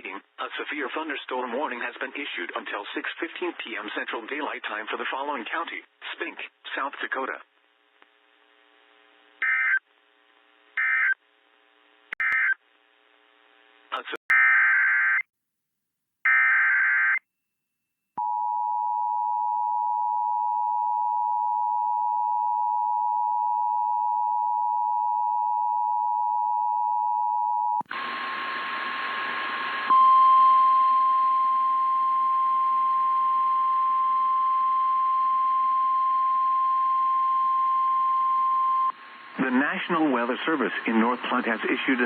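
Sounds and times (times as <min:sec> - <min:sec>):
radio hiss: 0:27.9 - 0:29.9, 0:38.9 - 0:42.0.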